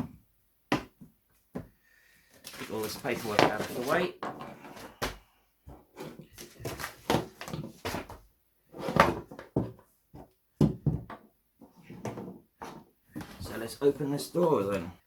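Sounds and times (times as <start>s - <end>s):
paper rustling: 2.4s - 5.1s, 6.3s - 8.1s.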